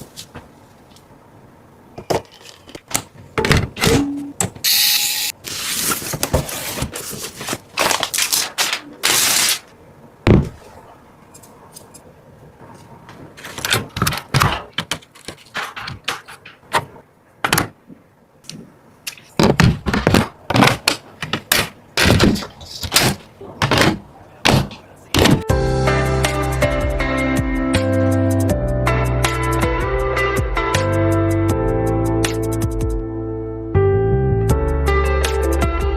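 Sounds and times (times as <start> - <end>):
computer parts clicking and knocking: 13.4 - 17.8, 19.1 - 25.5.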